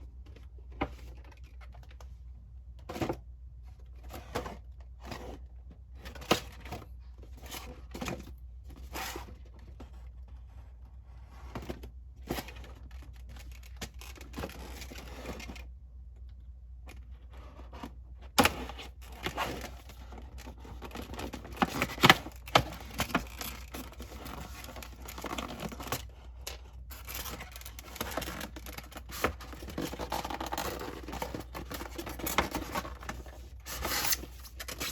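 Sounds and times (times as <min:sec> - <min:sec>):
packaging rustling and tearing: 0:18.4 - 0:34.9.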